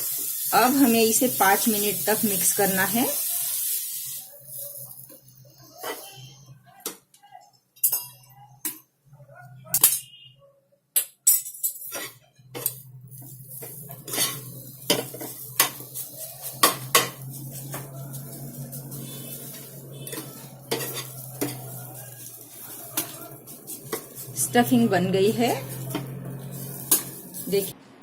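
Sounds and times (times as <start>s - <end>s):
metal spoon scraping a pan: 0.1s - 6.4s, 11.7s - 27.8s.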